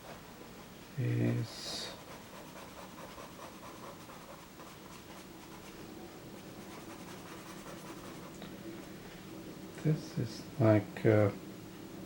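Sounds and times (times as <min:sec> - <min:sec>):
faint steady hum: 0:00.0 - 0:12.0
pencil scratching on paper: 0:01.8 - 0:05.8, 0:06.6 - 0:08.4.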